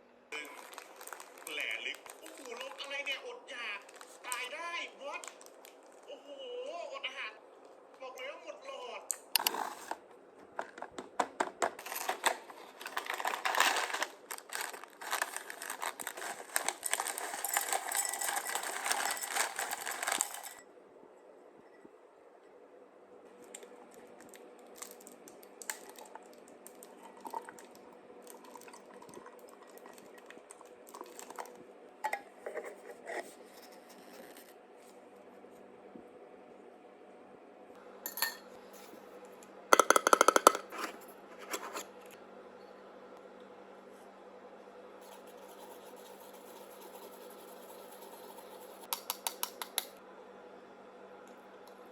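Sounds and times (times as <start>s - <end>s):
faint steady hum: 0.0s - 51.9s
crinkling and rattling: 0.4s - 3.0s, 3.8s - 4.5s, 9.4s - 20.6s, 23.5s - 33.3s.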